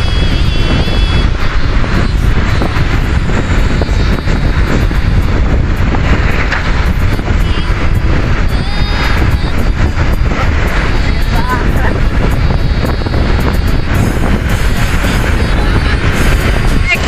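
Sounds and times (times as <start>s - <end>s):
faint high horn tones: 0.0s - 5.3s, 7.2s - 17.0s
truck engine and road noise: 0.0s - 17.0s
wind buffeting microphone: 0.0s - 17.0s.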